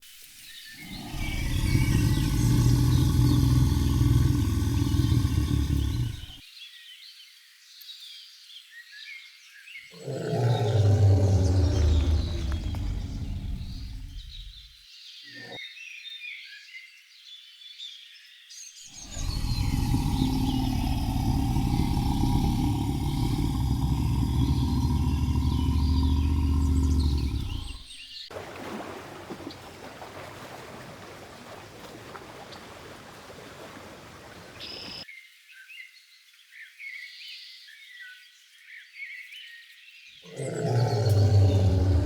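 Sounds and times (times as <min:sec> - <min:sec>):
even hiss: 0:00.0 - 0:06.4, 0:10.0 - 0:14.6, 0:19.0 - 0:27.9
birds chirping: 0:00.8 - 0:06.4, 0:09.9 - 0:15.6, 0:19.0 - 0:28.3, 0:33.8 - 0:35.0, 0:40.2 - 0:42.0.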